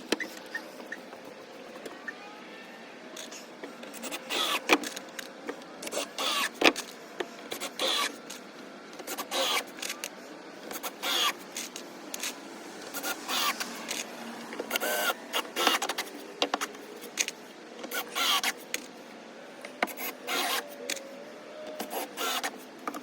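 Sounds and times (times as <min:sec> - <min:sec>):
small power tool motor: 0:03.9 - 0:04.9, 0:05.8 - 0:06.8, 0:07.5 - 0:08.3, 0:09.1 - 0:09.9, 0:10.7 - 0:16.0, 0:17.9 - 0:18.6, 0:19.9 - 0:20.7, 0:21.8 - 0:22.6.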